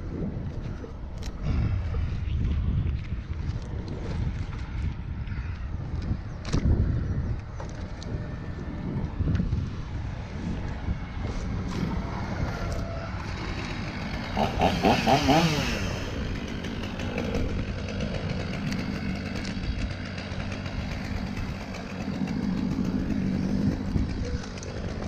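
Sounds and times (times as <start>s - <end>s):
chainsaw engine running: 7.4s - 25.0s.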